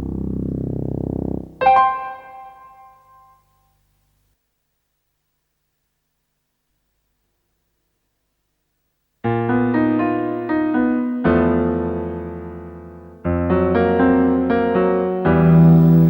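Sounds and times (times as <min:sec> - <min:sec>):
piano music: 0:00.9 - 0:03.5, 0:09.3 - 0:16.0.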